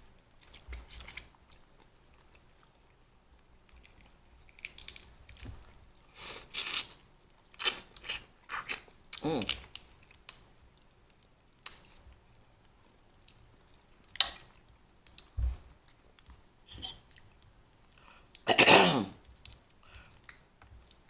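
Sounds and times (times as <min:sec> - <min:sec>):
chewing and crunching: 0:00.4 - 0:18.5, 0:19.2 - 0:21.0
throat-clearing cough: 0:18.5 - 0:19.2.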